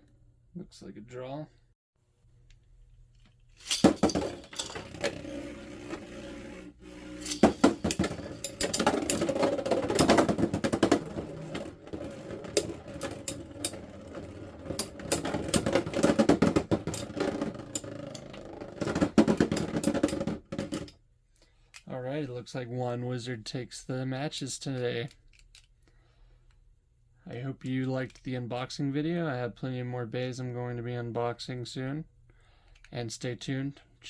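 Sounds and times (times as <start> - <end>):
spinning tops clacking together: 3.6 - 6.0, 7.0 - 20.9
spinning tops humming: 3.6 - 20.2.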